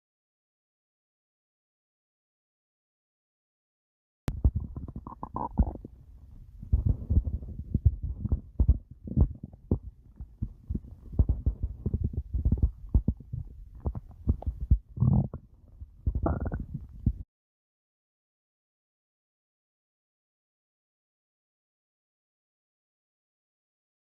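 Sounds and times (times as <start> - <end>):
stomach growling and gurgling: 4.3 - 17.2.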